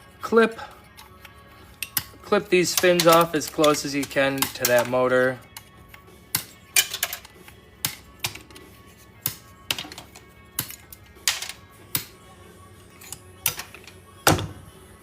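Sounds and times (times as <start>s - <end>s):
cutters snapping plastic blades: 1.0s - 8.6s, 10.6s - 11.0s.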